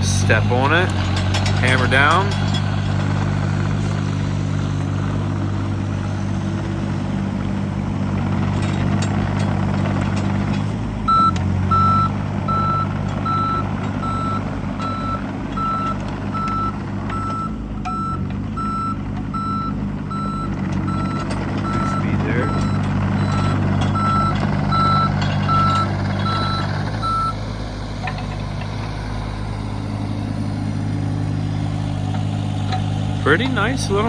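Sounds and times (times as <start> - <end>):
backup alarm beeping: 0.0 - 7.2, 11.1 - 28.2
excavator diesel engine running: 0.0 - 34.0.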